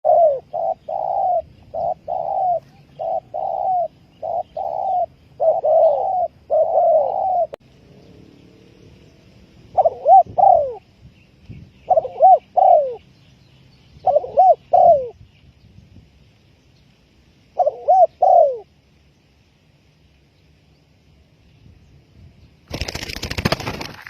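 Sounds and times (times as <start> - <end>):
dove cooing: 0.0 - 7.6, 9.7 - 10.9, 11.8 - 13.0, 14.0 - 15.2, 17.6 - 18.7.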